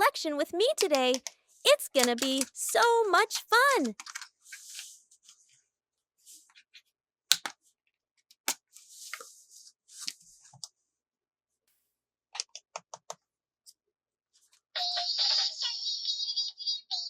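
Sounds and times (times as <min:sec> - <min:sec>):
sharp plastic clicks: 0:00.8 - 0:04.3, 0:07.3 - 0:07.6.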